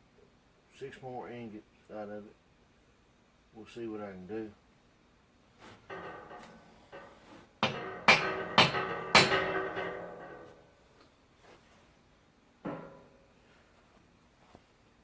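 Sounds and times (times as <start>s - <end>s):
metallic clanking strikes: 5.9s - 10.6s.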